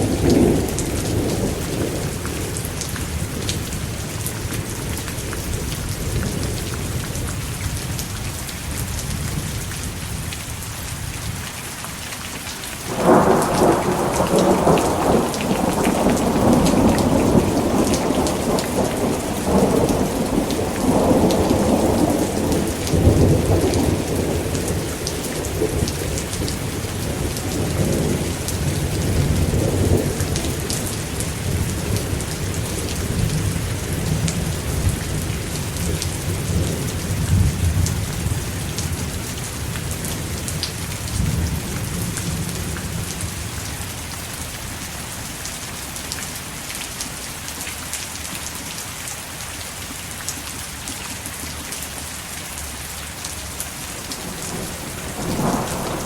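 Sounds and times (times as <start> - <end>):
heavy rain hissing and pattering: 0.0 - 56.0
thunder rolling: 12.9 - 39.1, 54.0 - 56.0.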